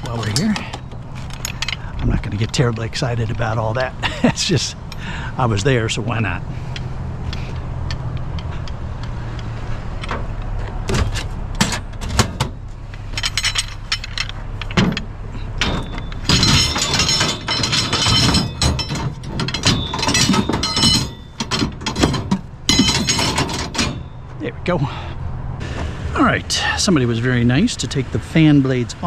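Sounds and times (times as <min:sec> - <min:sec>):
scrap metal clattering: 0:00.0 - 0:05.2, 0:06.6 - 0:24.4.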